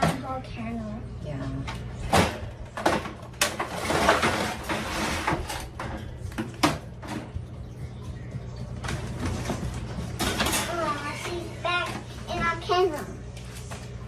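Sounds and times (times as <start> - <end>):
objects knocking and clattering: 2.0 - 7.4, 8.8 - 12.6.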